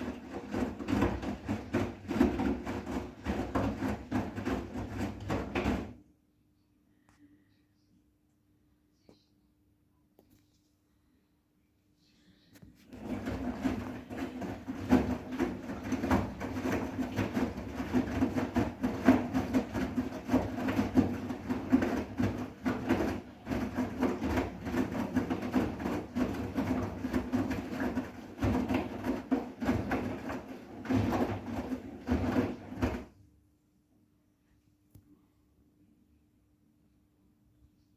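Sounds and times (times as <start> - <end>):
small knocks in washing machine: 0.0 - 6.0, 12.9 - 33.2
washing machine drum churning: 0.0 - 6.0, 12.9 - 33.2.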